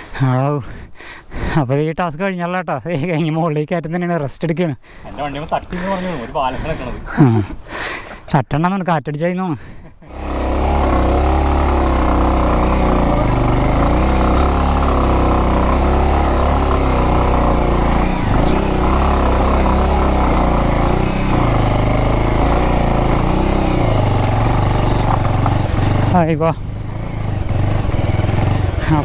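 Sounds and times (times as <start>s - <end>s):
motorcycle engine under load: 10.1s - 29.0s.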